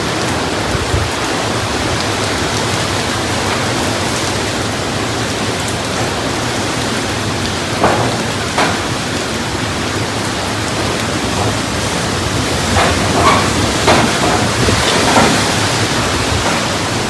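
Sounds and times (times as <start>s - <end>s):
heavy rain: 0.0s - 17.0s
hurricane wind: 0.0s - 17.0s.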